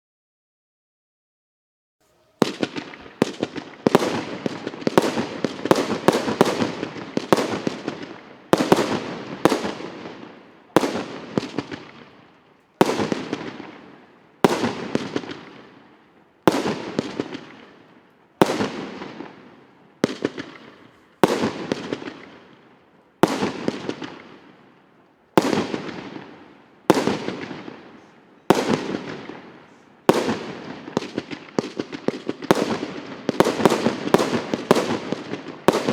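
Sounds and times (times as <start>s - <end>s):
firework cake shots: 2.1s - 15.7s
firework crackle: 2.1s - 24.6s, 25.3s - 35.9s.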